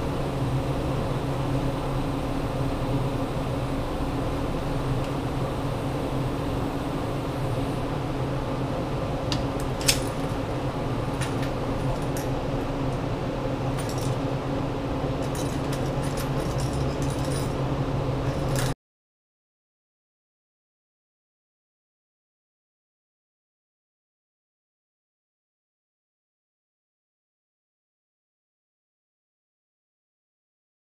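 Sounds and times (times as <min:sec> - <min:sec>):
steady mechanical hum: 0:00.0 - 0:18.8
metal chain clinking: 0:13.8 - 0:14.2, 0:15.2 - 0:17.6, 0:18.3 - 0:18.7.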